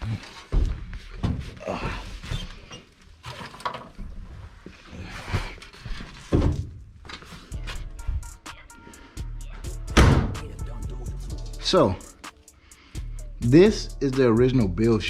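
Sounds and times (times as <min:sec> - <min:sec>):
heavy thud: 0:09.9 - 0:10.5.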